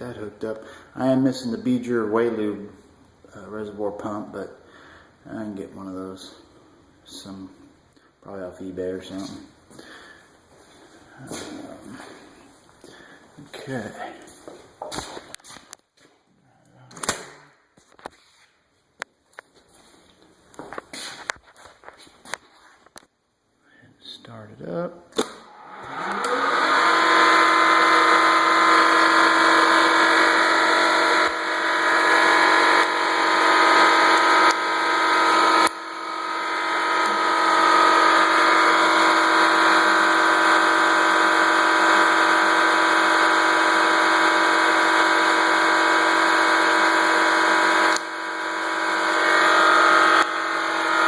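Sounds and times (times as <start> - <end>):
milling machine motor whining: 25.5 - 51.0.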